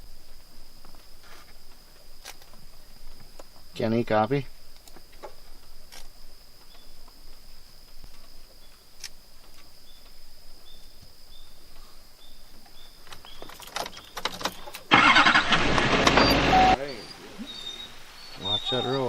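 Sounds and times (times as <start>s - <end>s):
high insect drone: 0.0s - 15.3s
short high chirps: 16.1s - 19.0s.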